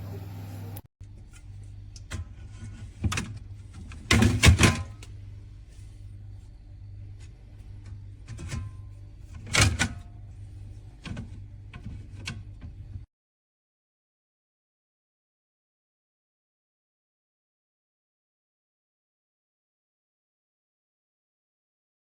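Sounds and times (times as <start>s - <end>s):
steady low hum: 4.9s - 9.5s.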